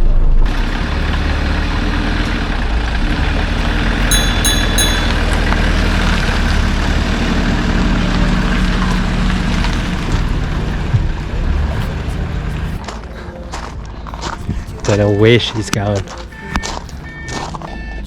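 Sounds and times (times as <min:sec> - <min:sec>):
bus engine droning: 0:00.4 - 0:15.5.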